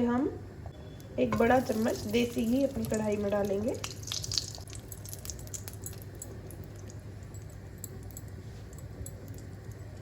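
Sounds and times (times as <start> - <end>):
ghee clicking in a pan: 1.3 - 8.4.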